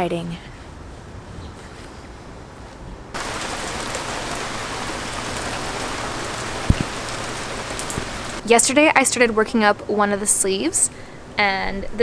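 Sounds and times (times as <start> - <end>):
heavy rain hissing: 3.2 - 11.4
low thump: 6.6 - 7.0.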